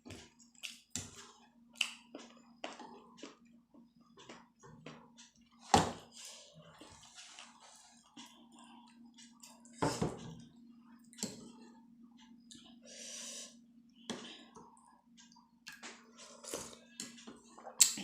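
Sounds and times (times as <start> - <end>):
wet chewing and mouth smacks: 1.8 - 3.5.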